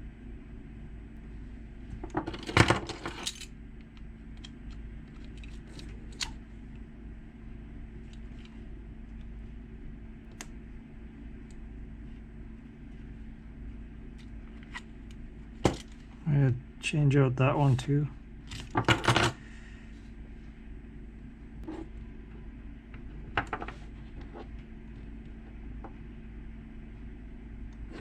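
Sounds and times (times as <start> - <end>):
small metal lock parts clinking: 2.3 - 3.5, 4.4 - 6.4.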